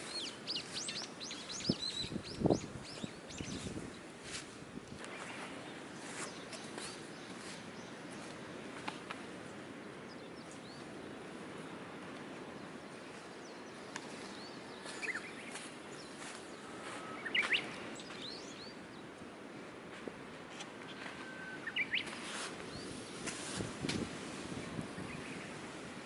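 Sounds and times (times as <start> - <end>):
birds chirping: 0.0 - 4.1, 5.0 - 8.6, 9.4 - 19.2, 20.9 - 23.3
steady outdoor hiss: 0.0 - 26.0.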